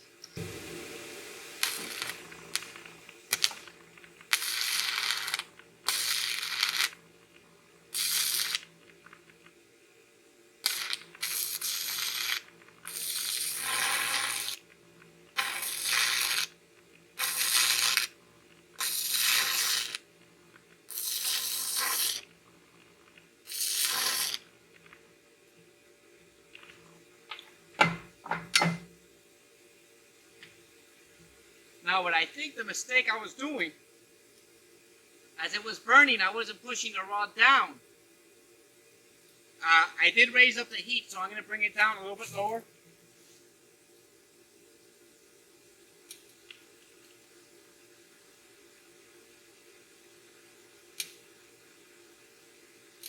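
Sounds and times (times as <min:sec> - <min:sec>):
welding arc crackling: 0:00.0 - 0:09.6, 0:10.6 - 0:25.0.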